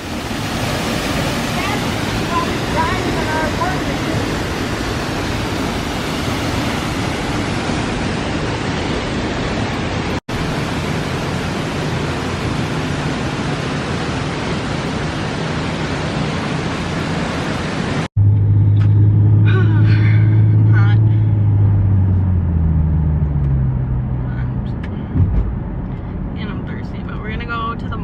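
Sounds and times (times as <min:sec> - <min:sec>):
waterfall rushing: 0:00.0 - 0:18.1
low car engine hum: 0:00.0 - 0:28.0.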